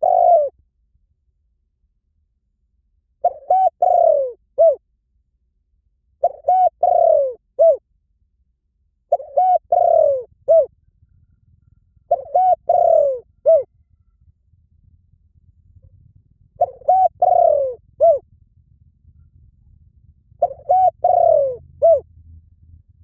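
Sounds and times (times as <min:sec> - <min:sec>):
dove cooing: 0:00.0 - 0:00.6, 0:03.2 - 0:04.8, 0:06.2 - 0:07.8, 0:09.1 - 0:14.3, 0:15.6 - 0:18.3, 0:19.1 - 0:22.1.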